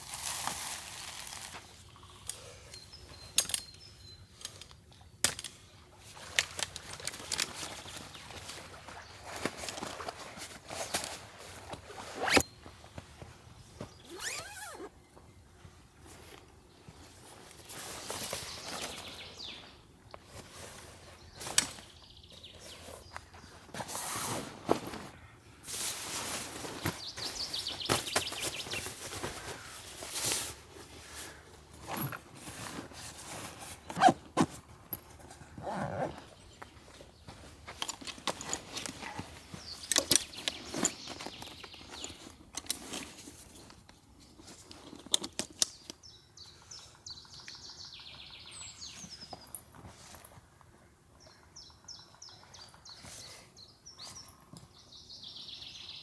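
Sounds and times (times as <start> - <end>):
fabric and bags rustling: 6.0 - 14.9, 20.3 - 45.4.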